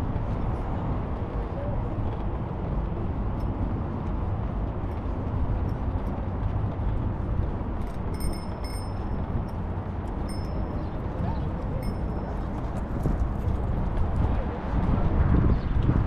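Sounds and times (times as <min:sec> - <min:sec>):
high-pitched ringing tones: 0:08.2 - 0:09.2, 0:10.3 - 0:10.9.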